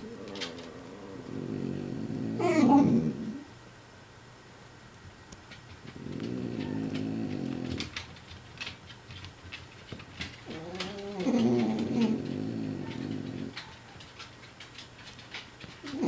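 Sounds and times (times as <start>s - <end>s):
dog whining: 0.0s - 3.5s, 5.9s - 7.9s, 10.5s - 14.0s.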